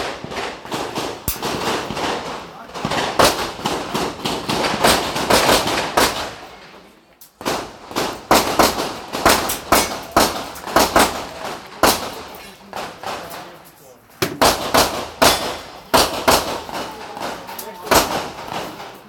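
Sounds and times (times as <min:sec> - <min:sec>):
handgun shots: 0:14.2 - 0:16.9.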